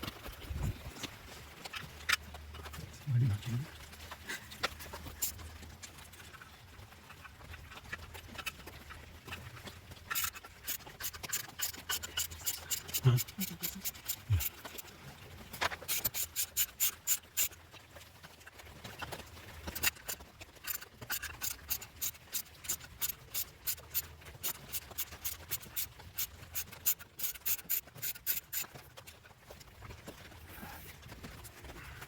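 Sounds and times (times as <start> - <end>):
hand tool clicks and scrapes on metal: 10.1 - 14.9, 15.6 - 17.6, 19.7 - 29.1.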